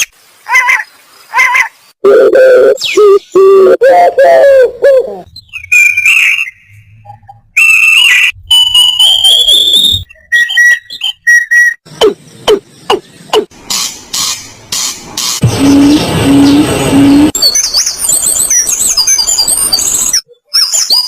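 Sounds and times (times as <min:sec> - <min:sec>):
birds whistling: 0:05.3 - 0:21.0.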